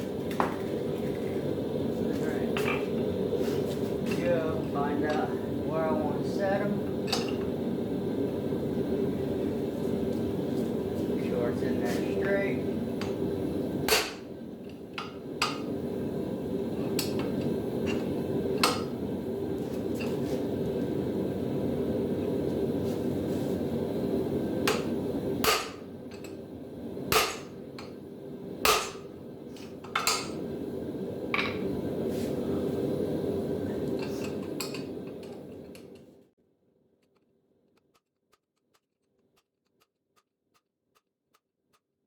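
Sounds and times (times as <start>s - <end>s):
hammer striking metal: 13.9s - 14.2s, 24.7s - 25.8s, 27.1s - 27.6s, 28.7s - 29.1s.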